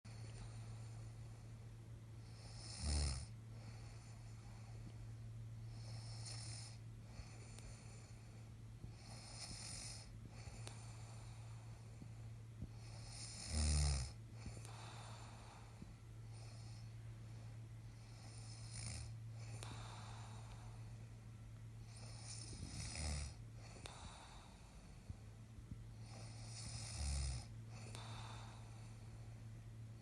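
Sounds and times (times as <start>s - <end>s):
steady low hum: 0.0s - 30.0s
man snoring: 2.3s - 4.1s, 5.7s - 8.2s, 8.9s - 11.5s, 12.8s - 15.5s, 18.0s - 20.6s, 21.8s - 24.5s, 26.0s - 28.7s.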